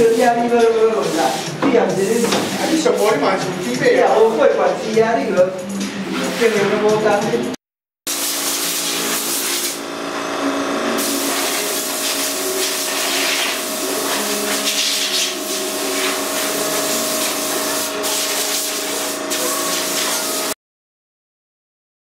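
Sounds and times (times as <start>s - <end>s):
vacuum cleaner running: 8.1s - 20.6s.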